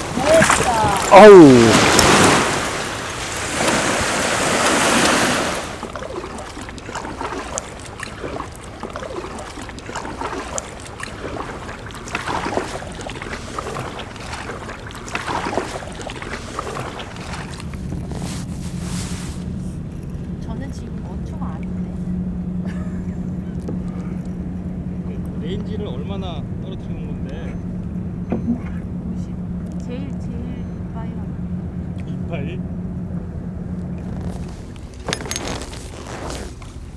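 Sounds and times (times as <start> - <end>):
water lapping around kayak: 0.0 - 36.9.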